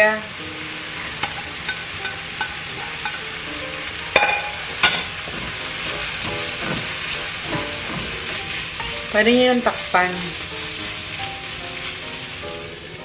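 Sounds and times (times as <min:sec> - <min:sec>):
pork sizzling in a frying pan: 0:00.0 - 0:13.0
stirring utensil taps: 0:01.1 - 0:12.5
metal clanks: 0:04.2 - 0:09.0.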